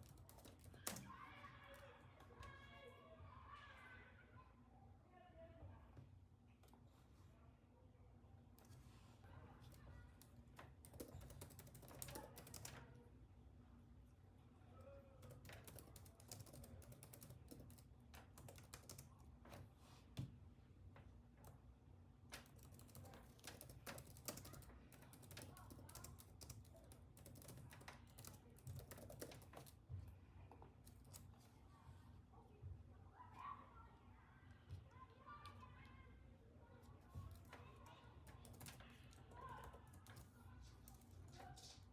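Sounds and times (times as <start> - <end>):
computer keyboard typing: 0.0 - 1.1, 9.6 - 12.9, 15.2 - 19.6, 22.4 - 29.8, 37.3 - 41.2.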